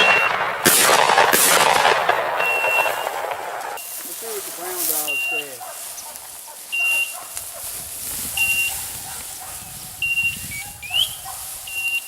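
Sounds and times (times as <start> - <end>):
beeper collar beeping: 0.0 - 0.4, 2.4 - 3.2, 4.9 - 5.8, 6.7 - 7.3, 8.3 - 8.8, 10.0 - 12.0
rustle of walking through cover: 2.4 - 12.0.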